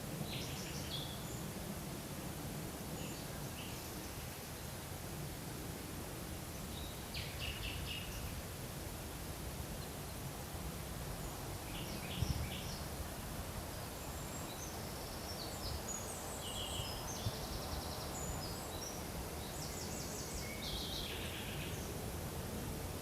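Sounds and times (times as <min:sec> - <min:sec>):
songbirds singing: 0:00.1 - 0:01.7, 0:02.9 - 0:04.9, 0:06.5 - 0:08.4, 0:11.2 - 0:13.0, 0:13.7 - 0:22.0.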